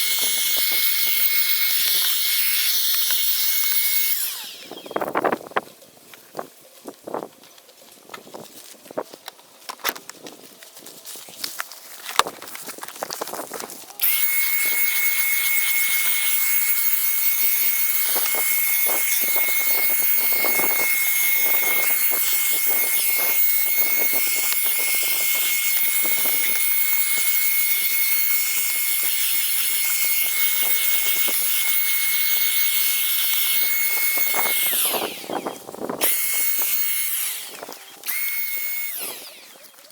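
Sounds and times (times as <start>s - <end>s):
handheld vacuum cleaner running: 0.0s - 5.5s, 14.0s - 39.9s.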